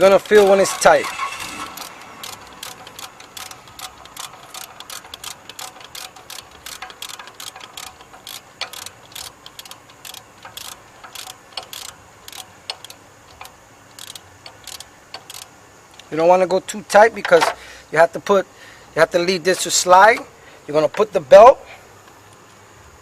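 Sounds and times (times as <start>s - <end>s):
socket ratchet clicking: 0.0s - 16.1s.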